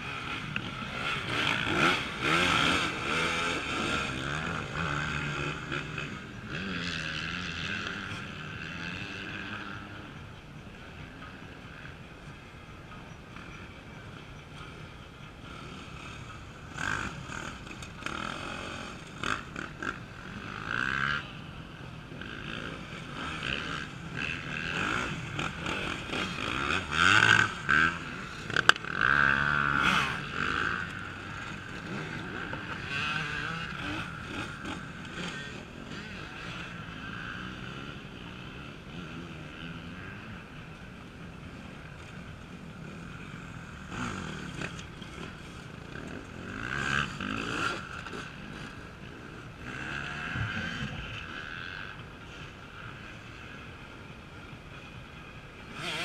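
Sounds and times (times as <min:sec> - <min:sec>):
motorcycle engines droning: 0:00.0 - 0:56.0
motorcycles revving past: 0:00.0 - 0:56.0.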